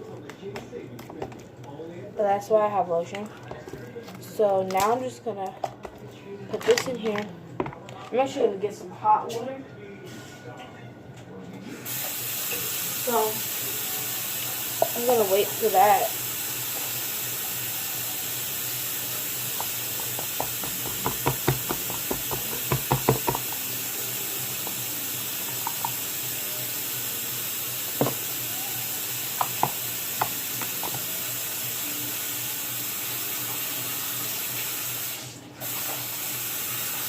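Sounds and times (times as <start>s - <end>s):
water running from a tap: 11.9s - 37.0s.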